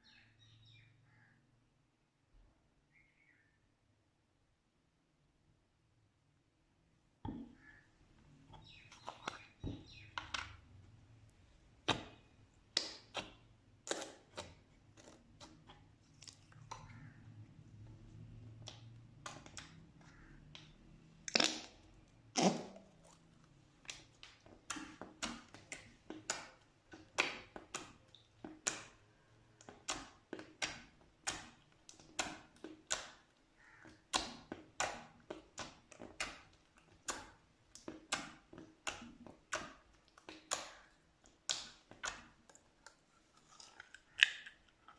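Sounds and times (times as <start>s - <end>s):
air pockets popping in slime: 21.3s - 23.1s
slime squeezed by hand: 22.3s - 23.2s.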